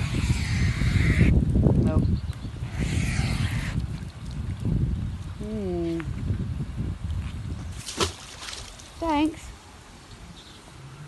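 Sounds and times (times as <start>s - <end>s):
wind buffeting microphone: 0.0s - 9.6s.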